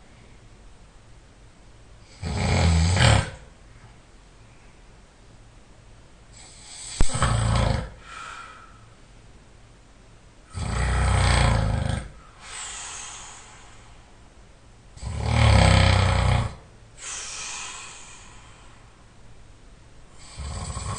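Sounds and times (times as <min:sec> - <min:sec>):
man snoring loudly: 0:02.1 - 0:03.4, 0:06.4 - 0:08.0, 0:10.5 - 0:12.2, 0:15.0 - 0:16.6, 0:20.2 - 0:20.9
quiet breath: 0:03.6 - 0:05.0, 0:06.4 - 0:09.2, 0:12.1 - 0:14.3, 0:17.0 - 0:19.2.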